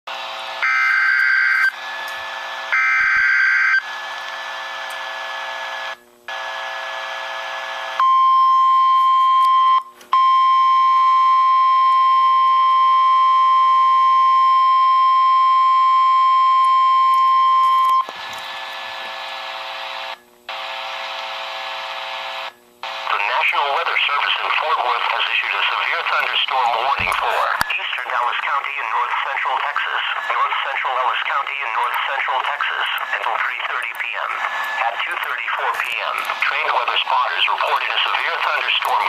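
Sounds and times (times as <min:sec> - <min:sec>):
broadcast hiss: 0:17.6 - 0:39.0
digital data tone bursts: 0:28.2 - 0:39.0.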